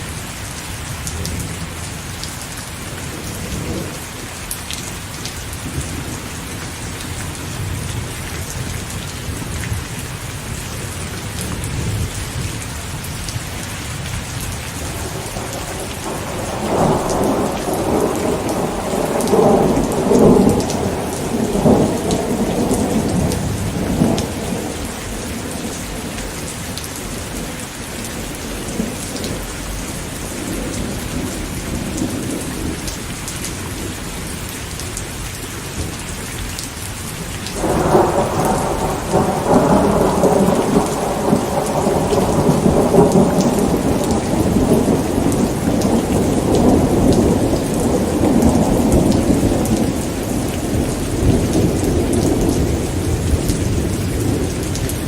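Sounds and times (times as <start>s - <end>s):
steady rain: 0.0s - 55.0s
thunder rumbling: 10.8s - 33.9s, 37.5s - 55.0s.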